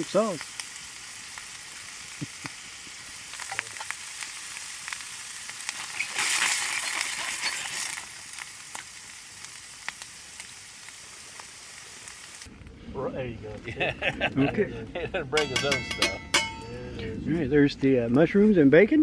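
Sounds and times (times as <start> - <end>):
food sizzling in a pan: 0.0 - 12.5
pops and crackles: 0.4 - 12.7.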